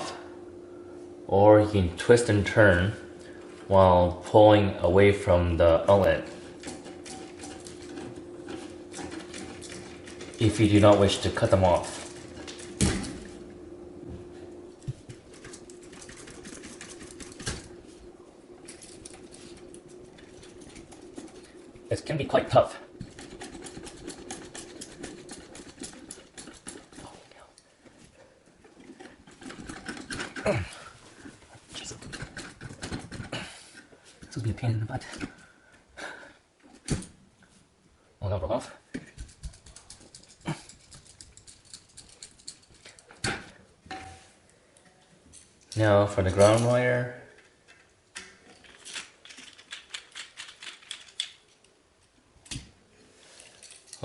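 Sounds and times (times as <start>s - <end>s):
faint steady hum: 0.0s - 54.0s
wires clicking and scraping: 5.6s - 13.7s, 14.4s - 35.4s, 39.0s - 54.0s.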